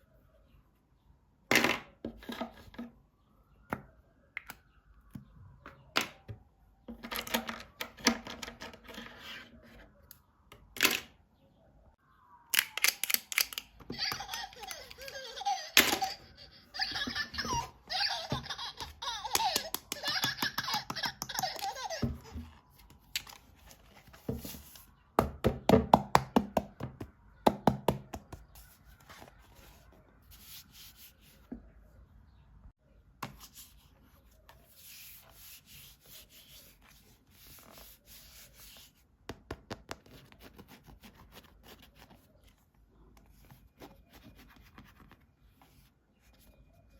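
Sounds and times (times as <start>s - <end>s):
sharp plastic clicks: 12.5s - 14.2s
toy playing recorded laugh: 13.8s - 22.6s.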